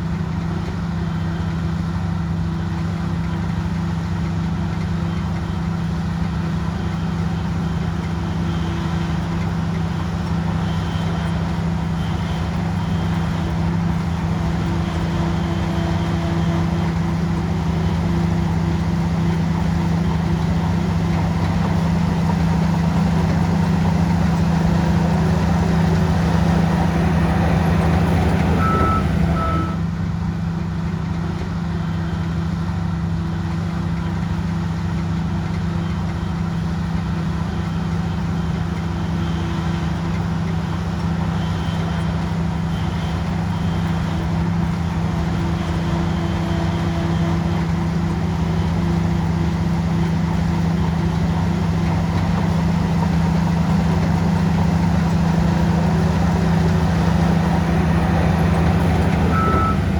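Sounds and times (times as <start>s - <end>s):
bulldozer diesel engine: 0.0s - 59.9s
reversing alarm beeps: 25.3s - 29.9s, 56.3s - 59.9s.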